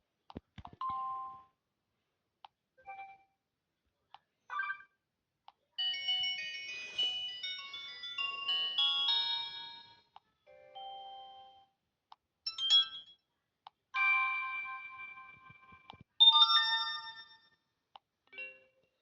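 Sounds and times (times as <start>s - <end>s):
smartphone ringtones and chimes: 5.8s - 10.1s, 12.5s - 13.2s, 14.0s - 17.6s.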